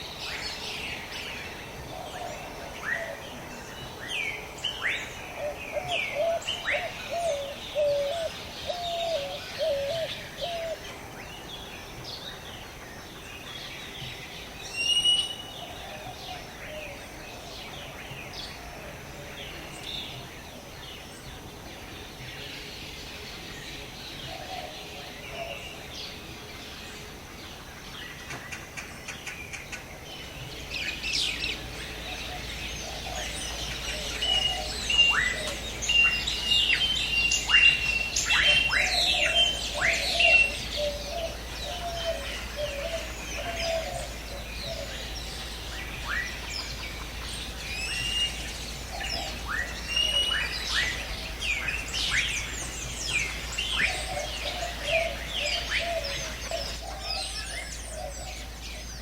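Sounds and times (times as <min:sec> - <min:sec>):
birds calling and chirping: 0:00.0 - 0:59.0
lower warbling bird call: 0:32.2 - 0:59.0.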